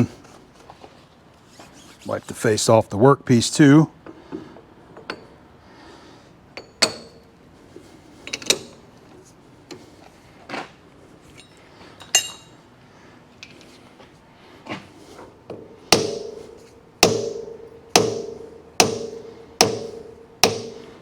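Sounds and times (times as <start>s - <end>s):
hammer tapping metal flange: 15.5s - 21.0s.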